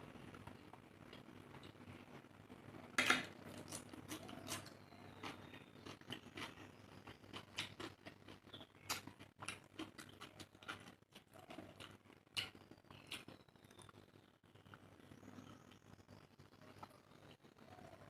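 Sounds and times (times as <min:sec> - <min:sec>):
person chewing food: 0:03.4 - 0:17.8.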